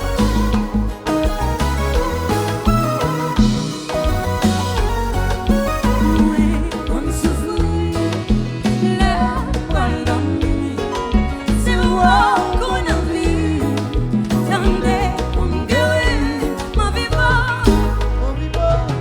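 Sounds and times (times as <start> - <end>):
live band playing dance music: 0.0 - 19.0
person singing: 6.0 - 19.0.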